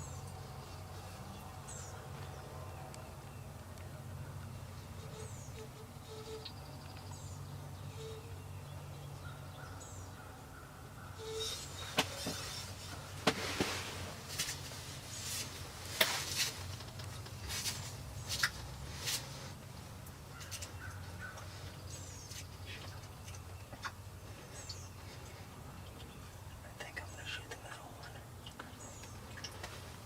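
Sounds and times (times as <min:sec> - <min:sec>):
faint high bird chirps: 0:05.0 - 0:10.1.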